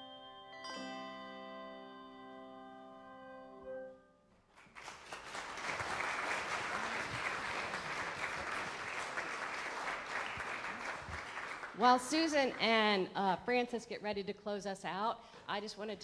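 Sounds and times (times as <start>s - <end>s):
handbells ringing a chord: 0.0s - 4.0s
audience applause: 4.5s - 13.0s.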